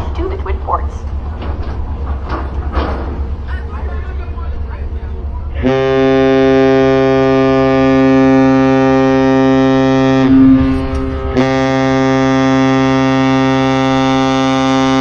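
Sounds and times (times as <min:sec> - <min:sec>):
deep ship's horn blasts: 0:05.6 - 0:15.0.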